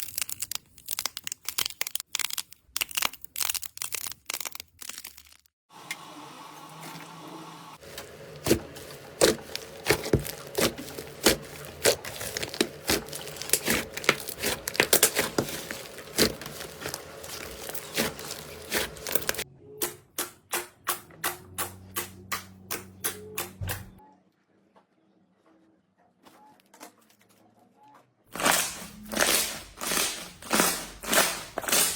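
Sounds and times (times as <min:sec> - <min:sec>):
slime crackling and popping: 0:00.0 - 0:05.5, 0:07.8 - 0:19.4, 0:28.4 - 0:31.9.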